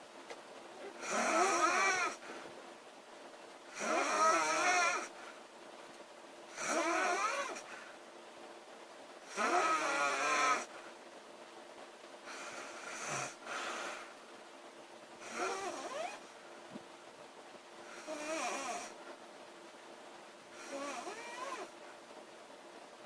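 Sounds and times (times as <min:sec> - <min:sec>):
woman snoring: 0:00.8 - 0:02.2, 0:03.7 - 0:05.1, 0:06.5 - 0:07.7, 0:09.3 - 0:10.7, 0:12.3 - 0:14.1, 0:15.2 - 0:16.2, 0:17.9 - 0:19.0, 0:20.6 - 0:21.7.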